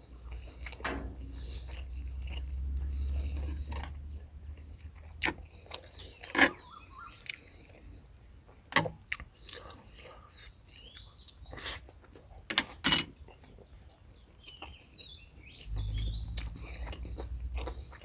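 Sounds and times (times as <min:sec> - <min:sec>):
low rumble: 0:00.0 - 0:06.0, 0:15.6 - 0:18.0.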